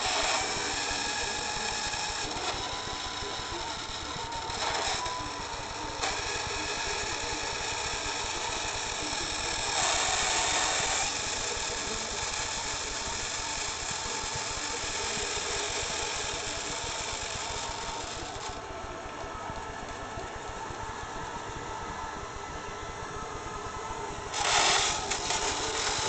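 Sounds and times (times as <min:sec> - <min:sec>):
robot vacuum whirring and whining: 0:00.0 - 0:18.6, 0:24.3 - 0:26.0.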